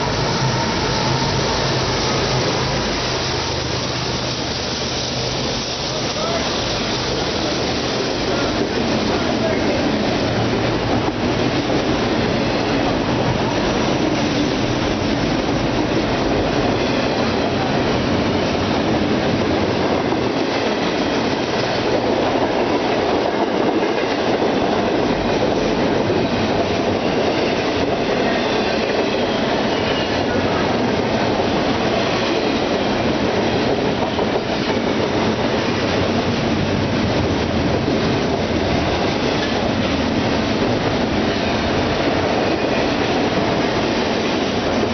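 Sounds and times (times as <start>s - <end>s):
freight train rumbling past: 0.0s - 44.9s.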